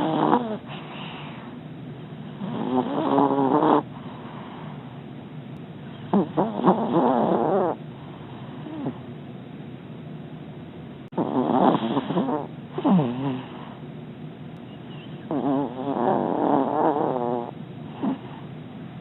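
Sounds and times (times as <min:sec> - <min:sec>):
puppy snoring: 0:00.0 - 0:01.6, 0:02.3 - 0:04.9, 0:05.9 - 0:09.1, 0:11.1 - 0:13.8, 0:15.1 - 0:18.5.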